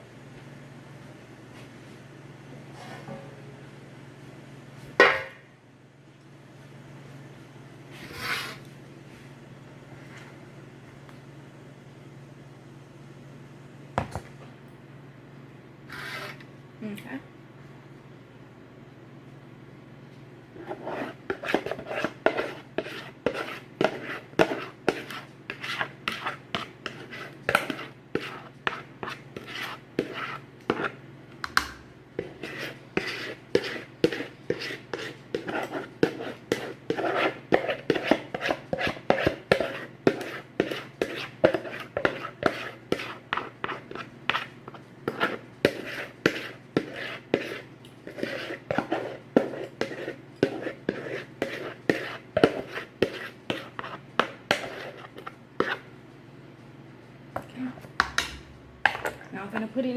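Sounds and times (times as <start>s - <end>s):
spoon scraping batter in bowl: 7.9s - 8.7s, 15.9s - 16.5s, 20.5s - 56.0s, 57.4s - 59.9s.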